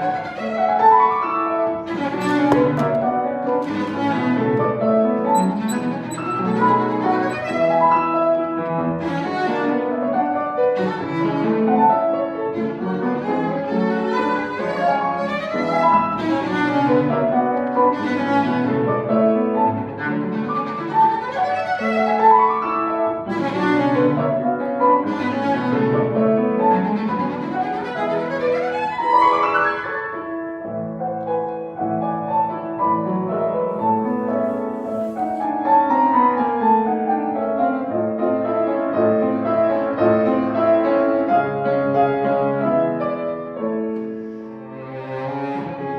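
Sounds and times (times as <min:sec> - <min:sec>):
bowed strings: 0:00.0 - 0:30.2, 0:42.8 - 0:45.9.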